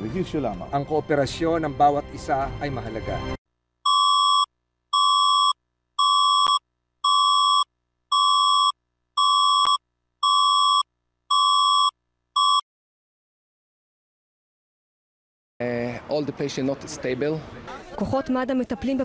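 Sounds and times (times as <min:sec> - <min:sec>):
electronic alarm beeping: 0:03.9 - 0:12.6.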